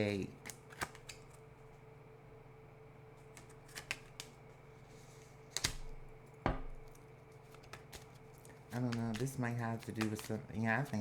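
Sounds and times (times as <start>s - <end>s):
faint steady hum: 0.0s - 11.0s
cards clicking on a table: 0.4s - 1.2s, 3.4s - 4.3s, 6.6s - 11.0s.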